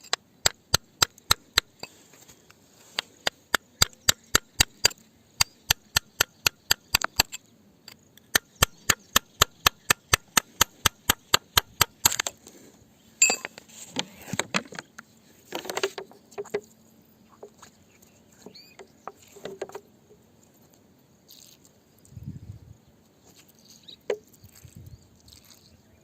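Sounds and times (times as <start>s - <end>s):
hammer tapping on rock: 0.0s - 1.8s, 3.2s - 7.4s, 8.3s - 12.2s.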